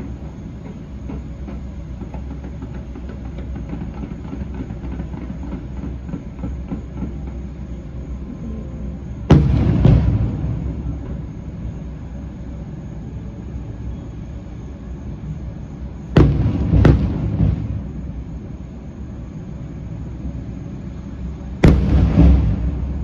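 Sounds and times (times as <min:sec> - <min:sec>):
fireworks bangs: 0:00.0 - 0:12.4, 0:16.0 - 0:18.4, 0:21.5 - 0:23.0.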